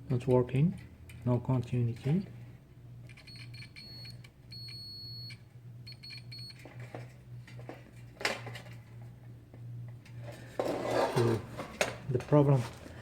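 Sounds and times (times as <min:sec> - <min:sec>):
low steady hum: 0:00.0 - 0:13.0
multimeter beeps: 0:03.1 - 0:06.7.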